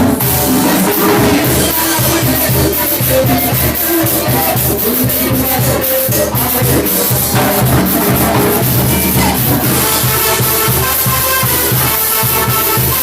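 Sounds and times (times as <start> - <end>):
cumbia music: 0.0 - 13.0.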